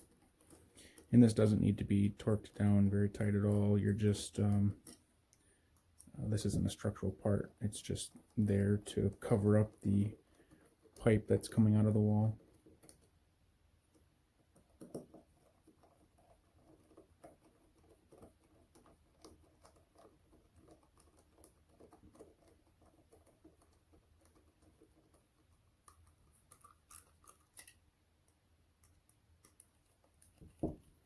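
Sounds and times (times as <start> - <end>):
screwdriver clicking and scratching: 14.6 - 30.9.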